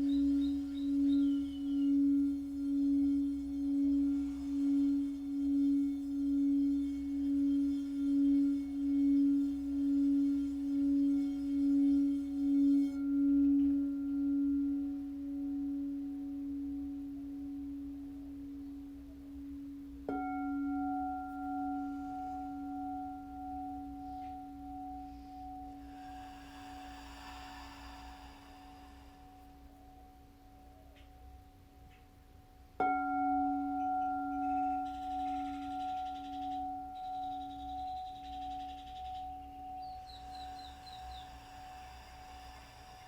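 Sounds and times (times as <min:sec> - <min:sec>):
higher singing bowl tone: 0:00.0 - 0:32.0, 0:32.8 - 0:43.0
singing bowl ringing: 0:00.0 - 0:43.0.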